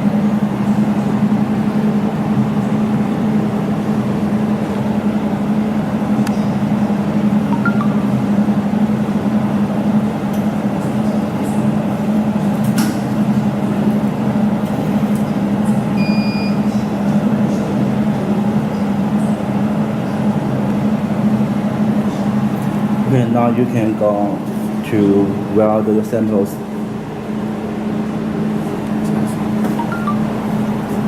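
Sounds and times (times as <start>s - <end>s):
machine humming: 7.0s - 9.2s, 29.7s - 31.0s.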